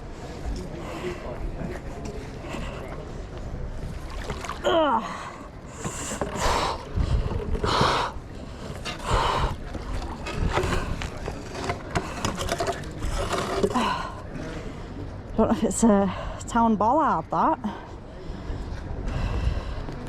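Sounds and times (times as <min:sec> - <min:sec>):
water splashing: 0:04.0 - 0:04.8.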